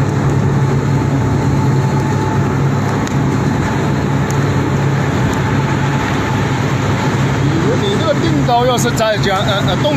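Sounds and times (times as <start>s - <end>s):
dense mechanical noise: 0.0s - 9.9s
machinery motor hum: 0.0s - 9.9s.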